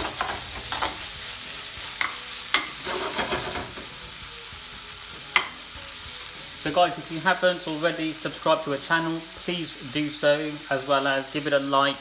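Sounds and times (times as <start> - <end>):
onion sizzling in a pan: 0.0 - 12.0
spoon knocking against pan: 2.0 - 4.0, 5.2 - 5.6.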